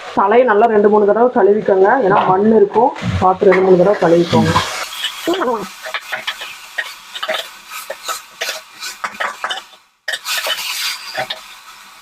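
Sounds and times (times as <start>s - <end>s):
greens sizzling in oil: 3.8s - 12.0s
spoon scraping a pan: 4.0s - 11.8s.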